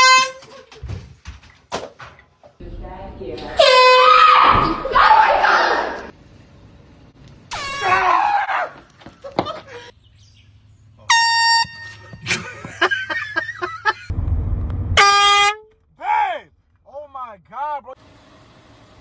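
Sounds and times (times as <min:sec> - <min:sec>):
air horn blasts: 0:00.0 - 0:00.5, 0:03.6 - 0:04.4, 0:07.5 - 0:08.0, 0:11.1 - 0:12.4, 0:15.0 - 0:15.7.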